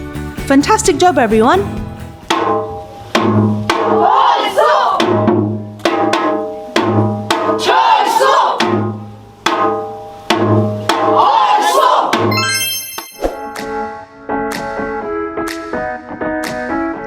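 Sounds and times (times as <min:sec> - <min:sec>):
percussion hits with ringing notes: 0:01.6 - 0:04.0, 0:05.0 - 0:07.6, 0:08.6 - 0:11.2, 0:12.2 - 0:14.6
wavering melody line: 0:12.3 - 0:13.8.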